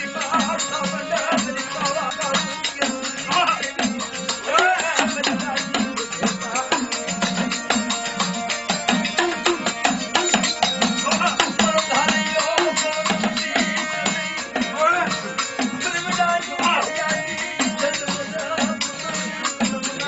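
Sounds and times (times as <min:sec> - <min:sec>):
hand drums beating: 0:00.0 - 0:20.0
sustained melodic tones: 0:05.3 - 0:20.0.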